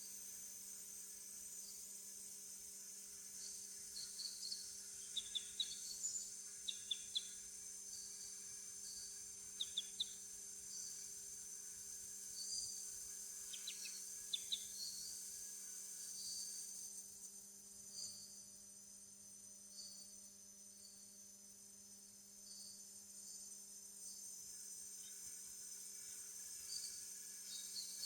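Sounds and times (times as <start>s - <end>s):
high-pitched insect drone: 3.4s - 16.7s, 22.5s - 28.0s.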